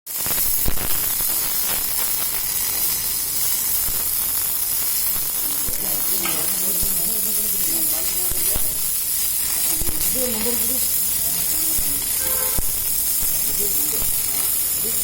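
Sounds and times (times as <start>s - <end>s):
arc welding crackling sizzle: 0.1s - 15.0s
welding arc sharp pops: 0.1s - 15.0s.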